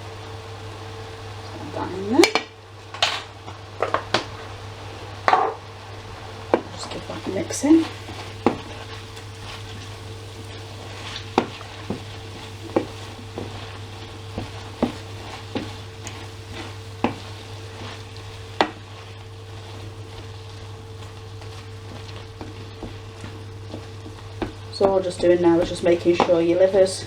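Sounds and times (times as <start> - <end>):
food sizzling in a frying pan: 0.0 - 27.0
steady low hum: 0.0 - 27.0
utensil knocking against a pan: 5.3 - 5.6.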